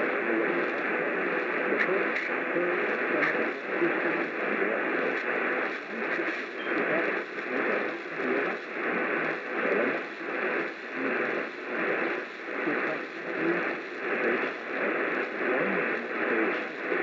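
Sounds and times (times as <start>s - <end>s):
radio static and hiss: 0.0s - 17.0s.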